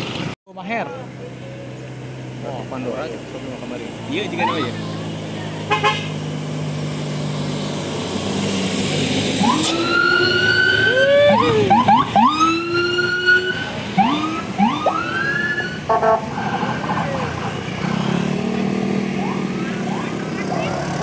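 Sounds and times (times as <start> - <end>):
bus musical air horn melody: 5.6 - 6.2, 15.4 - 16.7.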